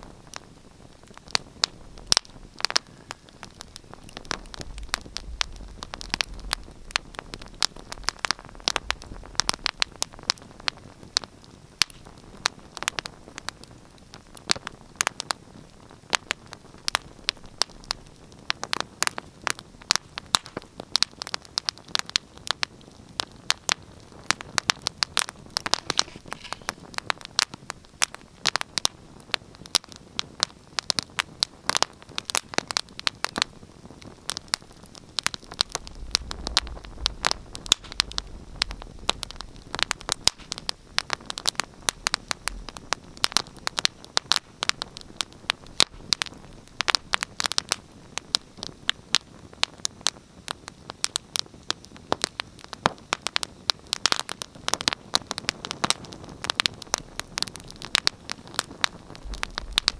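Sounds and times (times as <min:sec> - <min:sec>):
soft steady hiss: 0:00.0 - 0:59.9
wood fire crackling: 0:00.0 - 0:59.9
faint low rumble: 0:00.1 - 0:11.4, 0:34.2 - 0:43.6, 0:56.7 - 0:59.9.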